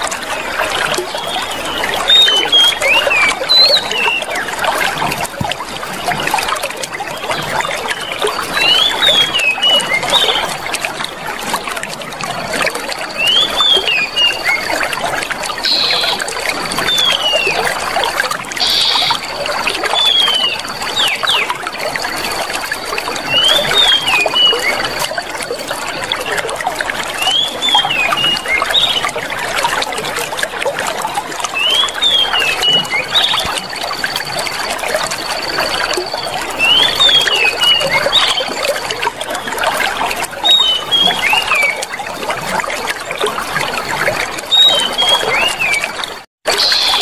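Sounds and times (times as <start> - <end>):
water trickling: 0.0 - 47.0
small bird chirping: 15.6 - 16.2.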